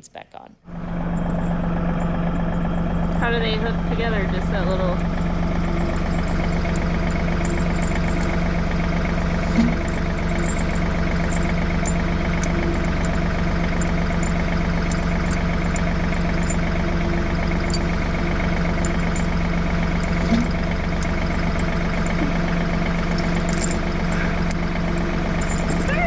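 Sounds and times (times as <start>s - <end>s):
tractor engine idling: 0.7s - 26.0s
metallic clinks of chains: 5.0s - 8.5s, 9.6s - 16.7s, 21.1s - 26.0s.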